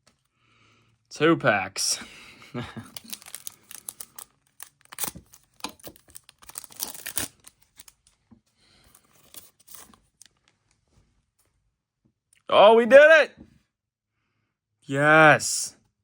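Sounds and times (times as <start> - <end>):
foil wrapper tearing and crinkling: 2.8 - 8.1, 9.0 - 10.4.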